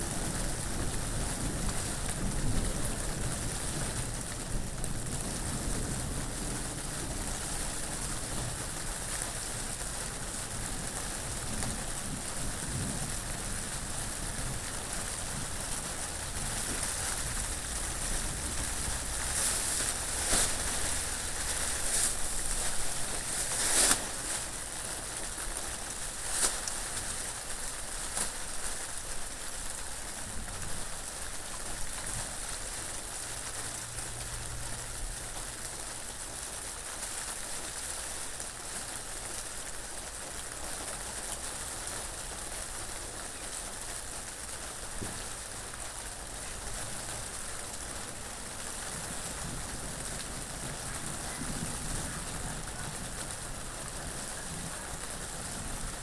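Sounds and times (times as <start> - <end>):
raindrop hits: 0.0 - 29.3, 44.9 - 56.0
steady rain falling: 0.0 - 56.0.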